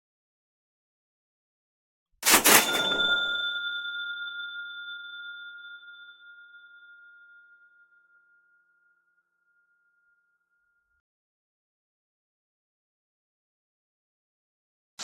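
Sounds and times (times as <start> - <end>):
cash register mechanical clatter: 2.2 - 3.4
cash register bell ring: 2.2 - 7.2.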